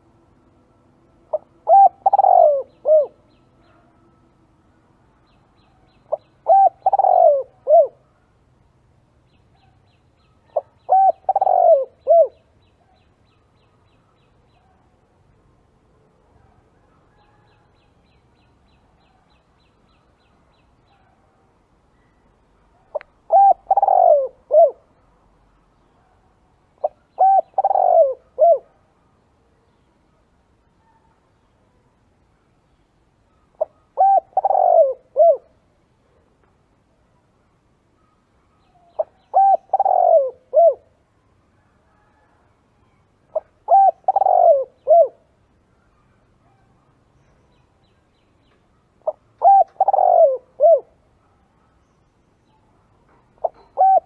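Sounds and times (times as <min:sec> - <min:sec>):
dove cooing: 0:01.3 - 0:03.2, 0:06.1 - 0:08.0, 0:10.4 - 0:12.4, 0:22.9 - 0:24.9, 0:26.8 - 0:28.8, 0:33.6 - 0:35.6, 0:38.9 - 0:41.0, 0:43.3 - 0:45.3, 0:49.0 - 0:51.0, 0:53.4 - 0:54.0.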